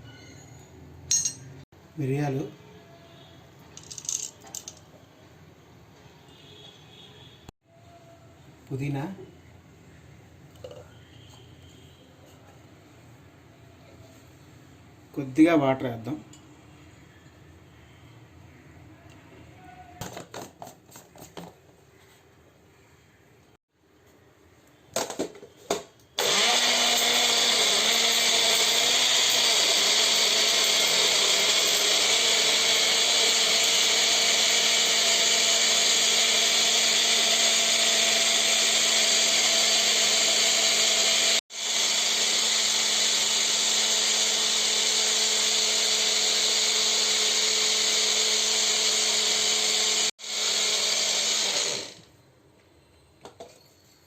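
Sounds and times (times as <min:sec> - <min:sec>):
mixer grinder running: 0:26.2 - 0:52.1.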